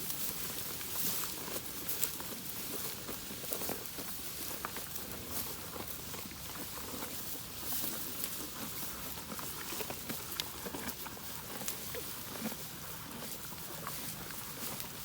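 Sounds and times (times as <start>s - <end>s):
cattle chewing hay: 0.0s - 15.0s.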